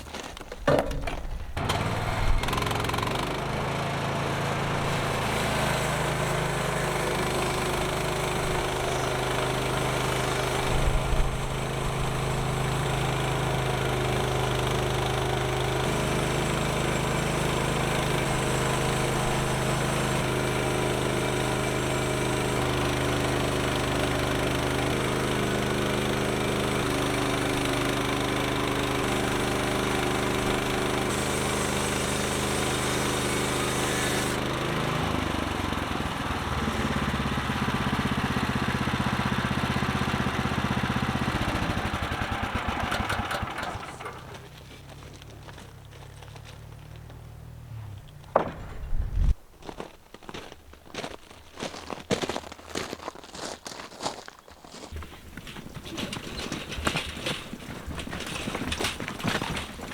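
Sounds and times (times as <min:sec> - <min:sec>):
sawmill engine running: 0:00.1 - 0:50.6, 0:54.8 - 0:59.9
brief knock: 0:48.3 - 0:49.2.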